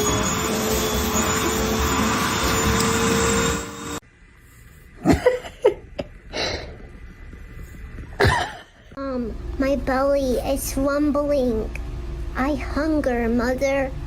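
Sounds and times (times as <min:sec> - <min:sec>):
loud motor humming: 0:00.0 - 0:04.0.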